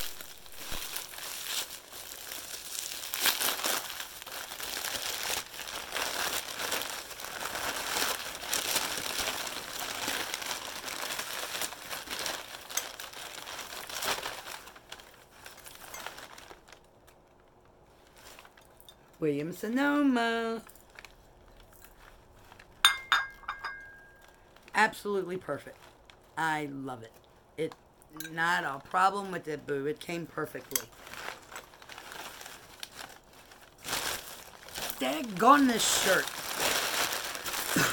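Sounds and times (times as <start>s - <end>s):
packing wrap crinkling and tearing: 0.0s - 18.9s, 20.5s - 22.9s, 30.4s - 37.9s.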